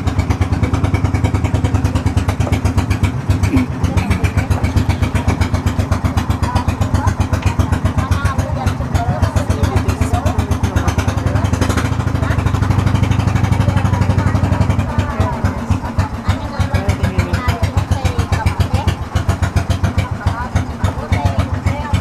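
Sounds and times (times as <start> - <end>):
small engine thumping: 0.0 - 22.0.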